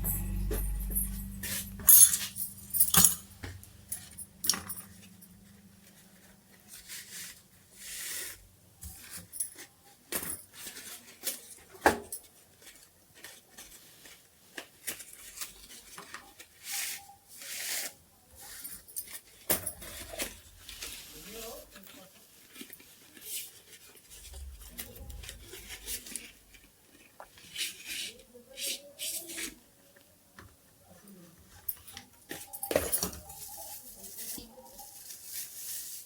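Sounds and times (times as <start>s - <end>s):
small metal parts clinking: 0.0s - 5.7s
low hum: 0.0s - 6.2s.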